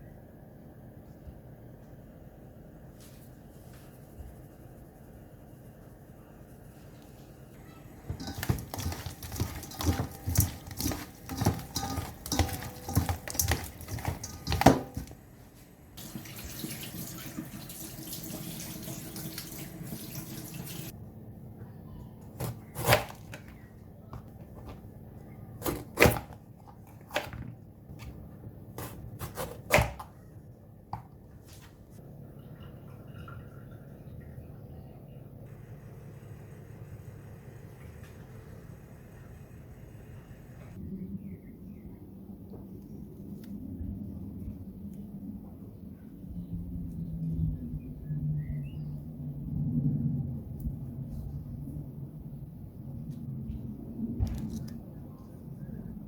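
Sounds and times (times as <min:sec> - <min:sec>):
kitchen tap running: 0:08.1 - 0:15.2, 0:16.0 - 0:20.9
knocks and clatter: 0:08.1 - 0:15.2.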